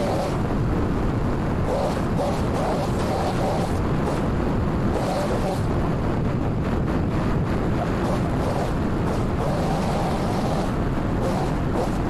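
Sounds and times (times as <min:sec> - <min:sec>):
pole saw engine running: 0:08.0 - 0:12.0.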